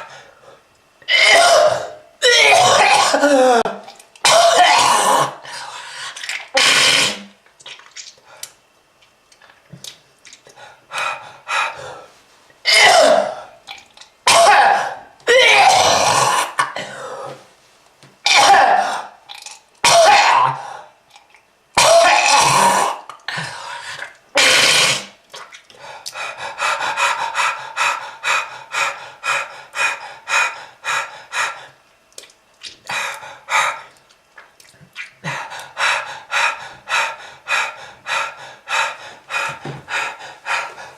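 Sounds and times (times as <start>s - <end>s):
person coughing harshly: 1.1s - 5.4s, 12.7s - 13.4s, 14.3s - 17.2s, 18.3s - 19.1s, 19.8s - 20.6s, 21.8s - 23.0s.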